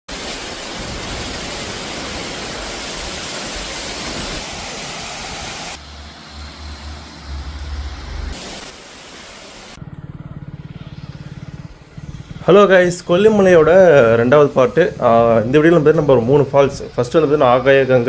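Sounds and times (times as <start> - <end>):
waterfall rushing: 0.1 - 9.8.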